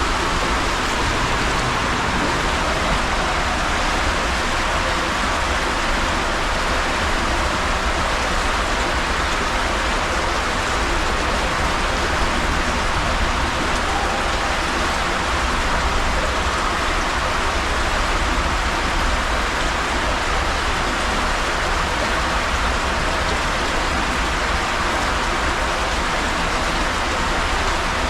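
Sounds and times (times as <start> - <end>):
low rumble: 0.0 - 6.7
water rushing down waterslide: 0.0 - 28.0.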